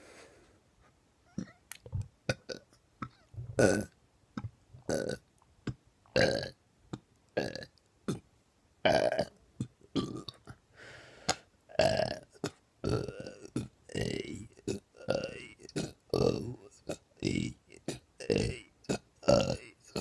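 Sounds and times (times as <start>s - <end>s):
person burping: 2.3s - 3.9s, 4.9s - 5.2s, 6.2s - 6.6s, 7.4s - 8.2s, 8.9s - 10.5s, 11.7s - 20.0s.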